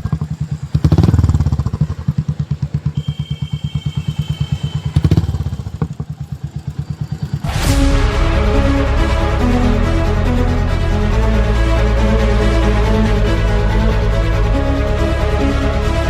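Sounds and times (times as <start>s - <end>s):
motorcycle engine idling: 0.0s - 7.7s.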